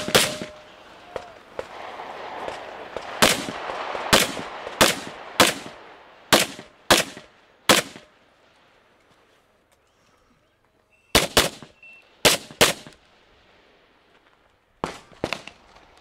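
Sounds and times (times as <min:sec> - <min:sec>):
pistol shots: 0:00.0 - 0:08.1, 0:11.1 - 0:13.0.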